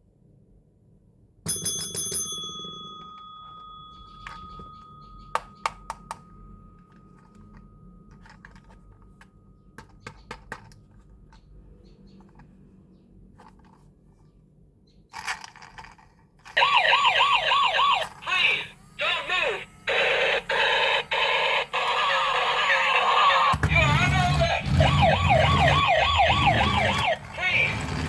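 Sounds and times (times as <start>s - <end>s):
ringing tone: 1.5s - 8.3s
plastic toy clicks: 15.1s - 16.6s
toy police siren wailing: 16.6s - 28.0s.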